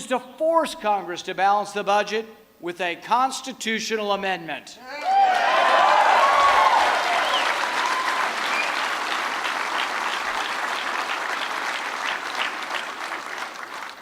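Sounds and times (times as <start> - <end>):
audience cheering: 4.9 - 13.4
audience applauding: 5.0 - 14.0.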